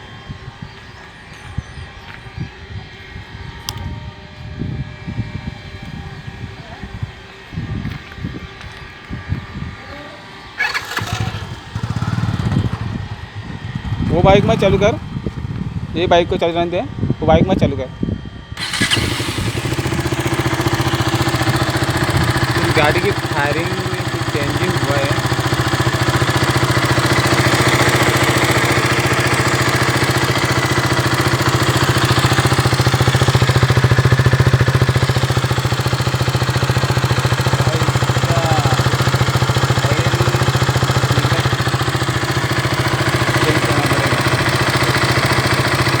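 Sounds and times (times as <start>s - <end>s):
motorcycle engine idling: 10.6s - 15.4s, 18.6s - 46.0s.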